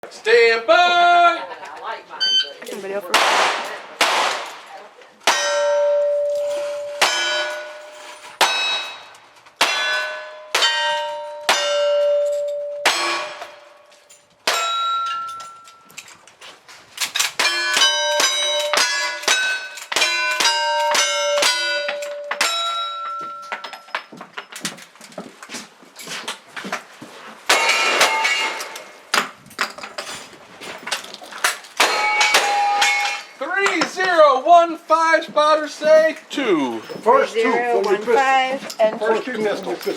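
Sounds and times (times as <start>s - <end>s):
gunshots: 3.1s - 5.5s
steel plate ringing: 5.2s - 15.9s, 17.4s - 24.1s, 27.5s - 29.0s, 31.8s - 33.4s.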